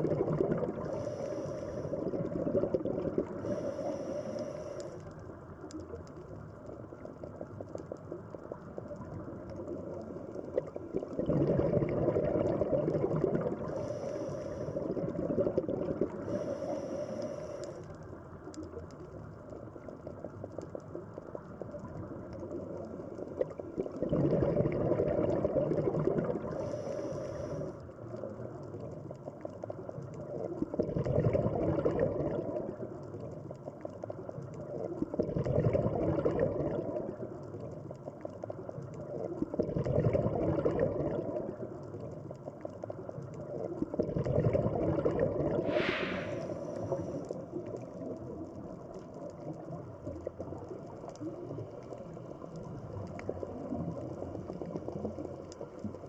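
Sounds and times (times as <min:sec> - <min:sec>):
gurgling exhaled bubbles: 0:00.0 - 0:04.1, 0:08.9 - 0:17.4, 0:21.6 - 0:27.6, 0:28.8 - 0:34.0, 0:34.6 - 0:56.0
underwater hiss: 0:00.2 - 0:05.1, 0:12.4 - 0:18.1, 0:26.2 - 0:27.8, 0:45.4 - 0:47.8
regulator inhale hiss: 0:00.8 - 0:02.1, 0:03.2 - 0:05.2, 0:13.6 - 0:15.0, 0:16.1 - 0:18.0, 0:26.5 - 0:27.9, 0:45.6 - 0:47.6.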